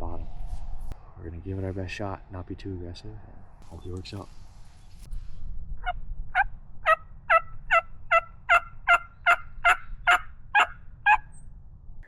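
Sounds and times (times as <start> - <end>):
turkey yelping: 6.4 - 11.3.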